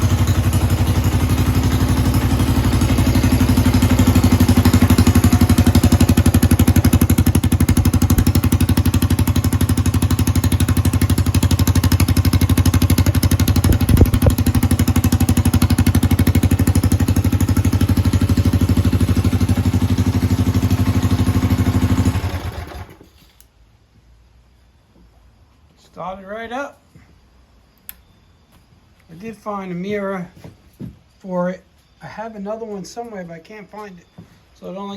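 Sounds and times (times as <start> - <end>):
small engine idling: 0.0 - 23.3.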